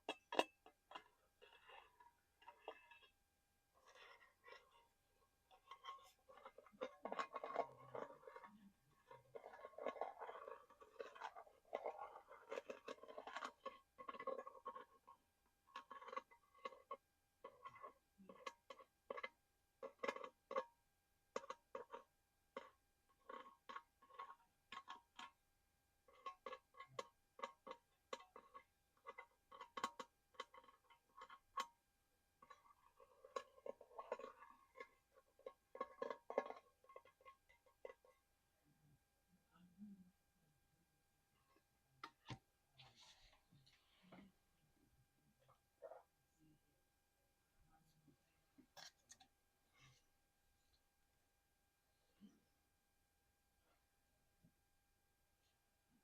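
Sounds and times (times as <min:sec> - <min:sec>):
scratching and rustling: 0:00.0 - 0:20.6, 0:32.4 - 0:38.3, 0:41.4 - 0:44.4.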